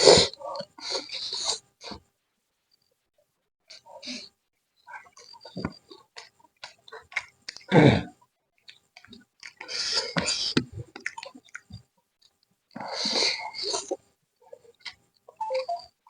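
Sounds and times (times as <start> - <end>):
person chewing with lip smacks: 5.2 - 7.7, 8.6 - 12.3.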